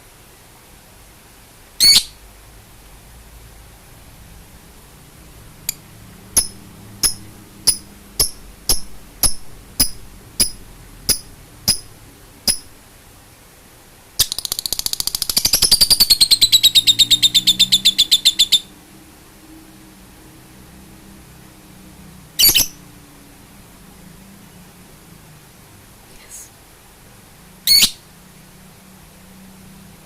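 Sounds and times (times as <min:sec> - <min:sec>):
rapid high bird trill: 0:06.4 - 0:12.8.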